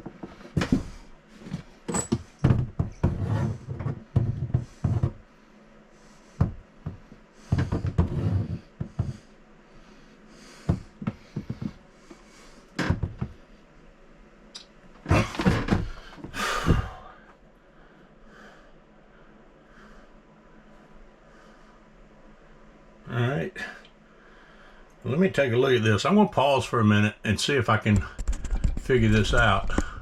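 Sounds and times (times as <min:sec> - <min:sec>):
knocks and clatter on plumbing: 0:01.9 - 0:05.2, 0:06.4 - 0:09.2, 0:12.8 - 0:13.4, 0:15.1 - 0:16.9, 0:27.9 - 0:30.0
person breathing: 0:04.4 - 0:12.8, 0:15.9 - 0:22.0, 0:23.6 - 0:25.0, 0:29.7 - 0:30.0.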